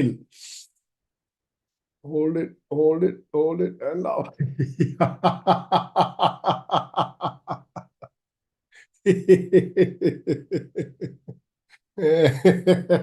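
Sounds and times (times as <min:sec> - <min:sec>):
man laughing rhythmically: 0:04.2 - 0:08.1, 0:09.1 - 0:11.4, 0:12.0 - 0:13.0.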